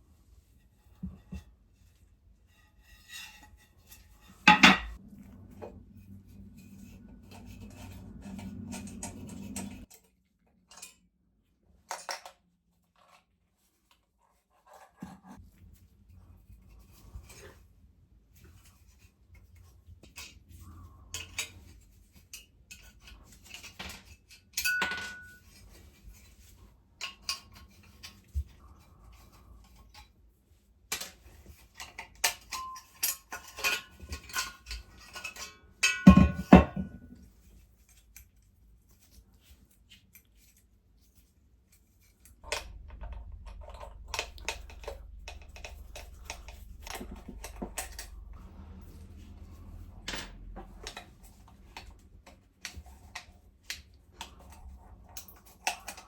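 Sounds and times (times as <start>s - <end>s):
low hum: 4.8s - 9.9s, 42.4s - 51.5s
metal parts clinking and knocking: 42.4s - 48.4s.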